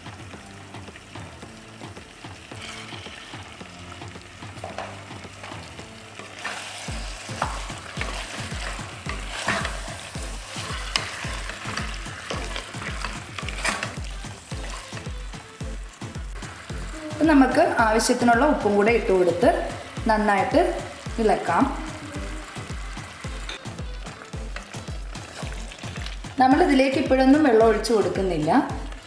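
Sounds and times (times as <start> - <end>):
meat sizzling in a pan: 0.0 - 29.0
spoon stirring and scraping pan: 0.1 - 29.0.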